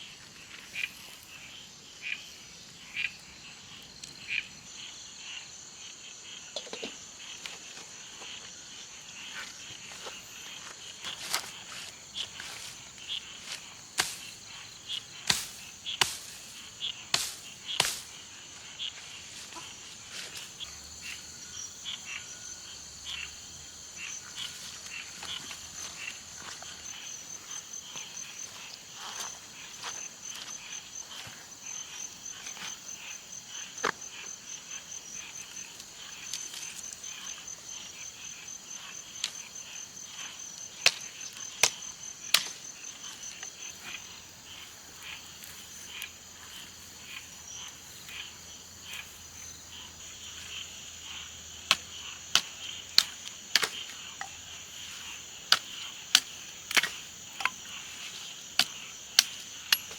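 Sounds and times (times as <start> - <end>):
insects trilling: 0.0 - 59.9
light hiss: 12.5 - 18.4.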